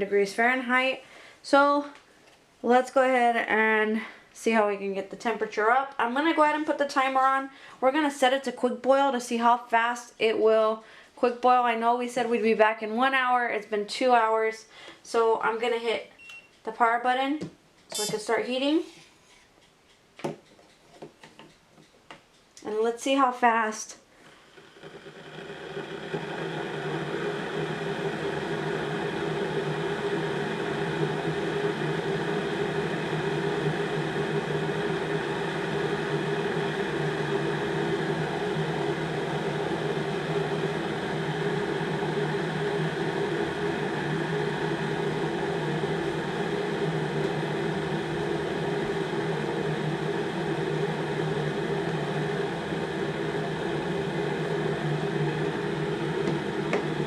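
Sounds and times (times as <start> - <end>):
electric kettle hissing and humming: 22.7 - 57.0.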